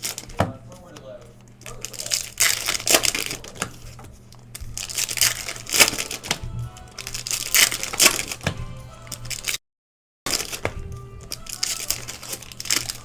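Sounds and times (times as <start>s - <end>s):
card flicking: 0.0s - 9.6s, 10.3s - 13.0s
paper and foil rustling: 0.0s - 9.6s, 10.3s - 13.0s.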